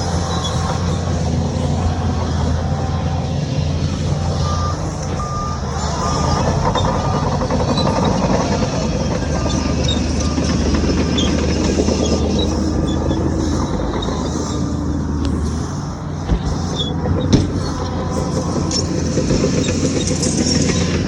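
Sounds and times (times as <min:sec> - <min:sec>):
diesel machinery running: 0:00.0 - 0:21.0
reversing alarm beeping: 0:04.4 - 0:14.7.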